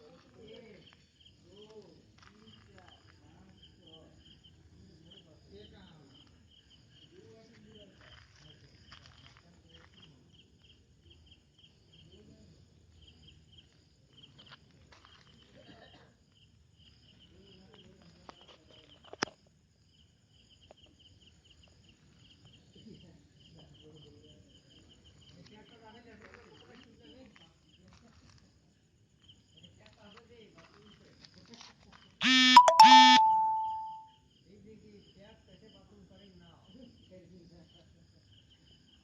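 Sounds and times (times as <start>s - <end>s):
crickets chirping: 0.0s - 31.4s, 33.4s - 39.0s.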